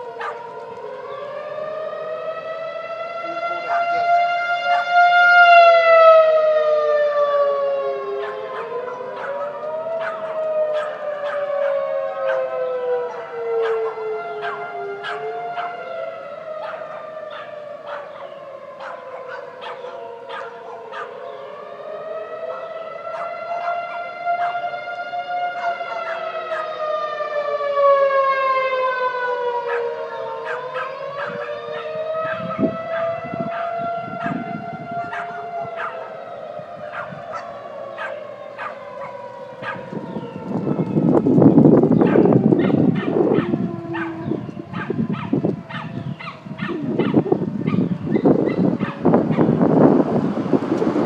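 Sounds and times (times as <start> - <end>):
tornado sirens wailing: 0.0 - 51.0
dog barking: 0.2 - 0.6, 3.6 - 4.0, 4.7 - 5.0, 8.2 - 15.9, 16.6 - 21.2, 22.4 - 24.7, 25.6 - 26.8, 29.6 - 36.2, 36.8 - 39.9, 42.0 - 49.6.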